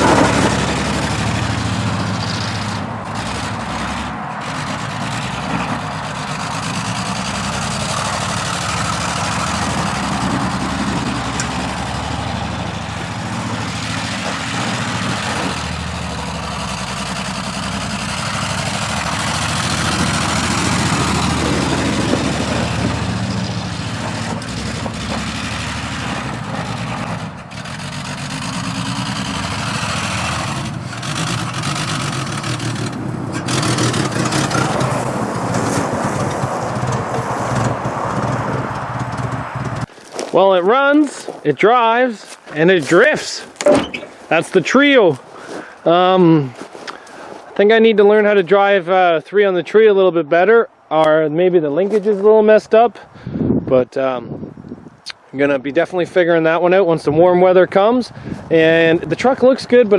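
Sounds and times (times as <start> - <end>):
truck engine revving while driving: 0.0 - 39.9.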